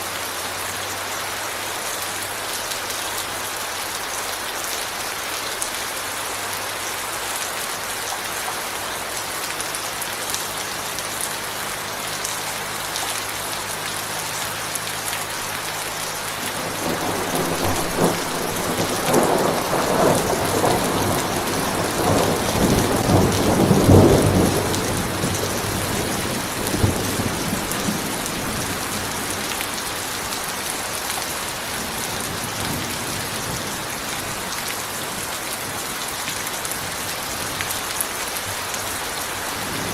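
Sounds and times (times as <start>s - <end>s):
steady rain falling: 0.0s - 39.9s
rolling thunder rumble: 16.5s - 29.2s.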